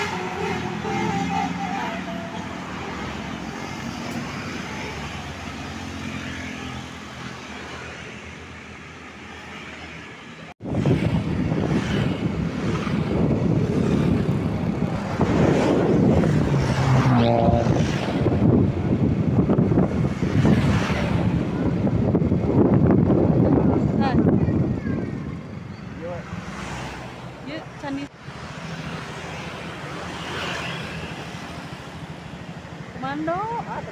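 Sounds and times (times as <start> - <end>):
road noise: 0.0 - 33.9
wind buffeting microphone: 10.6 - 26.4.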